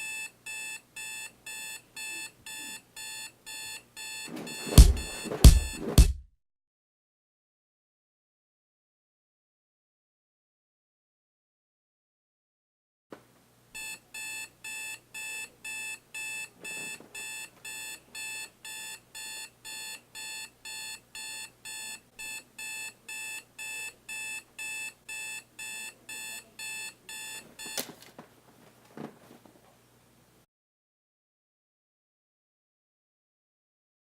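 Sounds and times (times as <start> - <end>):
alarm clock beeping: 0.0 - 6.1, 13.8 - 27.9
soft thump: 4.7 - 6.2
sharp knock: 4.8 - 6.2.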